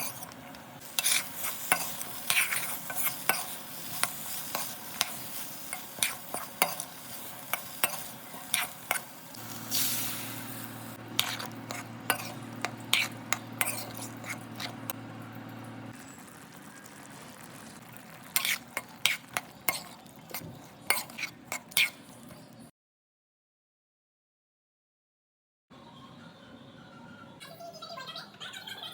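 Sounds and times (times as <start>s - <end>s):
spatula scraping a pan: 0.0s - 15.0s, 16.0s - 22.6s
vegetables sizzling in a pan: 0.0s - 22.6s.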